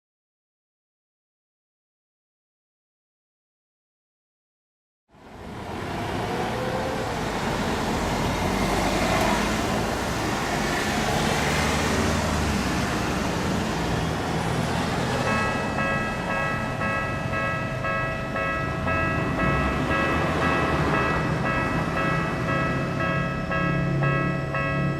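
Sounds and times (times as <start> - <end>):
road traffic passing: 5.1 - 24.9
crossing warning bell dinging: 6.0 - 24.9.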